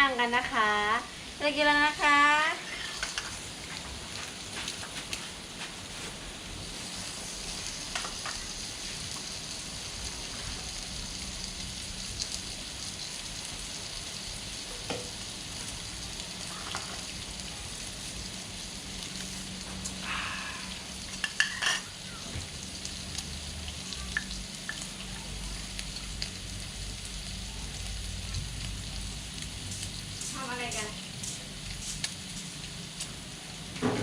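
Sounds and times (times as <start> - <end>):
meat sizzling on a grill pan: 0.0 - 34.0.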